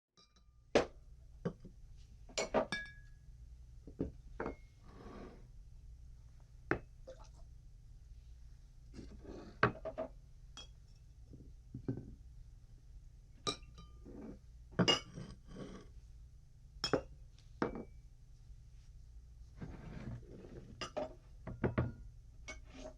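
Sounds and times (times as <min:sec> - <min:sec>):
glass objects clinking: 0:02.4 - 0:03.1, 0:14.8 - 0:15.3, 0:16.8 - 0:17.9.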